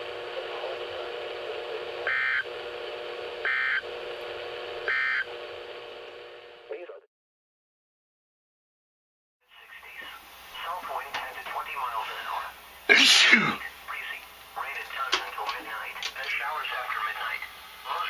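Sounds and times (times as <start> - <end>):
radio hiss with low hum: 0.0 - 7.1, 9.4 - 18.0
digital data screech bursts: 4.9 - 5.3.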